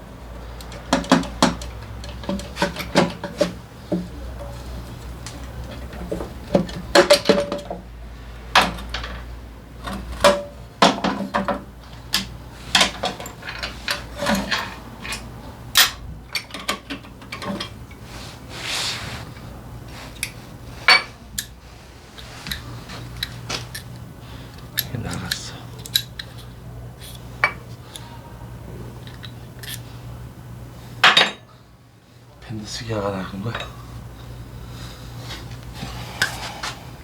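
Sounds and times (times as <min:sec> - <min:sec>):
steady low hum: 0:00.0 - 0:37.0
metal tools clinking: 0:11.1 - 0:17.8
hissing rub: 0:18.0 - 0:19.4.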